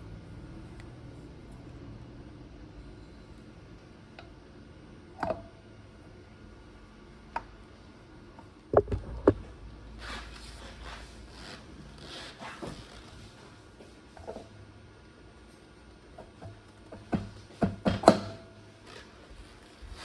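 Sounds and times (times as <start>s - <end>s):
hard objects knocking: 8.7s - 9.7s.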